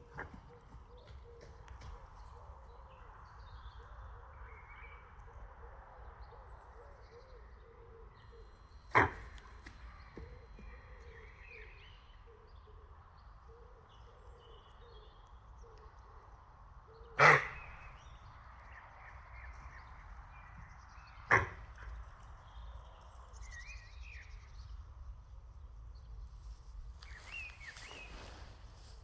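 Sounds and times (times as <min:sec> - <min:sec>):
low bird calls: 0:00.0 - 0:24.8, 0:27.0 - 0:29.0
faint bird chirps: 0:27.0 - 0:29.0.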